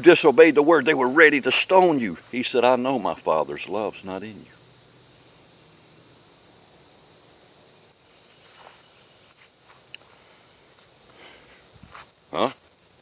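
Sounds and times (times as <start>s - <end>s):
crickets trilling: 0.0s - 13.0s
faint ticks: 9.3s - 10.2s.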